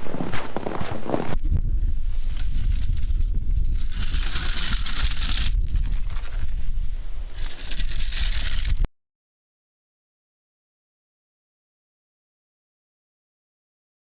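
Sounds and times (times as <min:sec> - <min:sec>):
dolly wheels rumbling: 0:02.1 - 0:08.9
metal rattling and jingling: 0:02.2 - 0:08.9.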